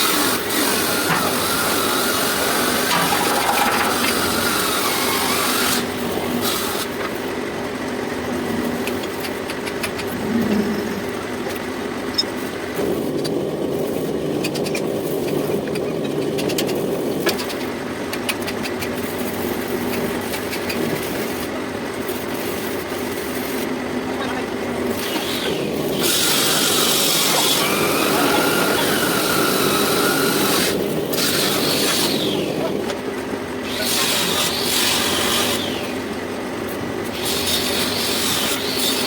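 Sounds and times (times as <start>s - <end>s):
metal lathe running: 0.0s - 6.8s.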